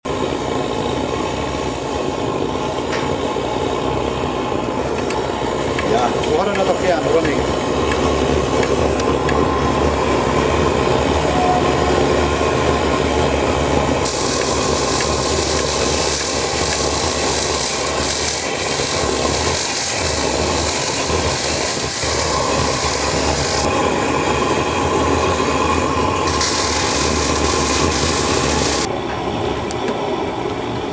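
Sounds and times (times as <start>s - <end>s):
engine chugging rhythmically: 0.4s - 28.9s
steady hiss: 14.0s - 28.9s.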